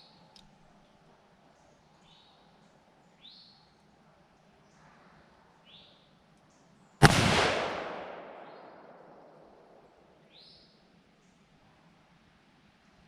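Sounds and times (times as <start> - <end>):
rifle shot with echo: 7.0 - 9.9.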